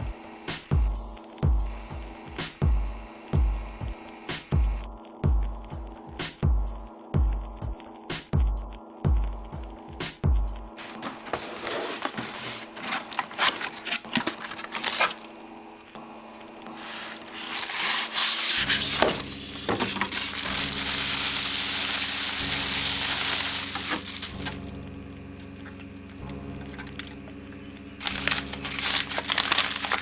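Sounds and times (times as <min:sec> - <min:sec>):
loud rubbing or scraping: 0:10.8 - 0:15.2, 0:16.6 - 0:24.3.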